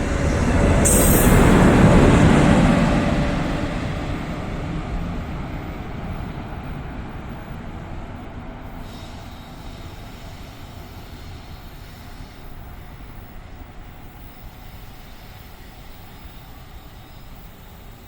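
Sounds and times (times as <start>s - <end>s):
passing train rumble: 0.0s - 14.8s.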